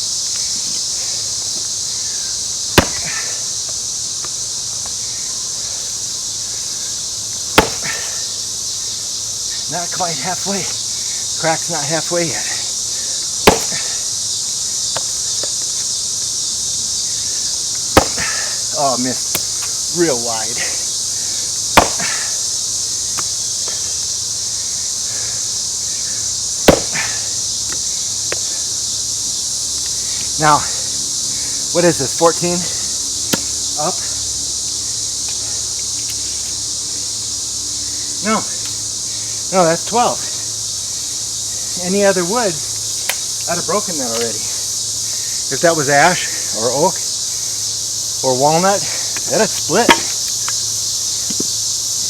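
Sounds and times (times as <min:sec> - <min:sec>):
insects chirring: 0:00.0 - 0:52.0
axe chopping wood: 0:02.8 - 0:03.4, 0:07.6 - 0:08.2, 0:13.4 - 0:14.0, 0:17.9 - 0:18.6, 0:21.8 - 0:22.4, 0:26.6 - 0:27.3, 0:49.7 - 0:50.3
axe blow into wood: 0:21.8 - 0:22.3.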